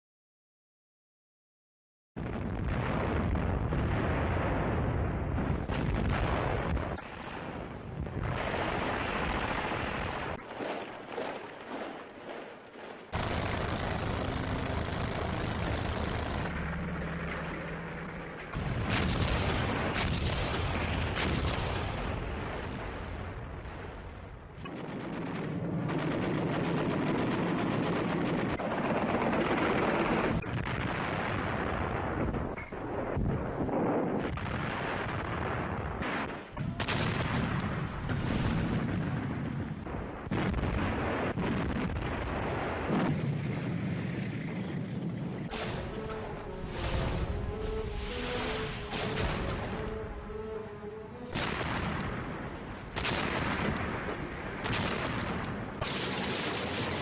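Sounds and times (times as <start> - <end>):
heavy artillery blasts: 2.2 - 57.0
rifle and machine-gun shots: 9.4 - 30.6, 45.5 - 50.6, 51.2 - 57.0.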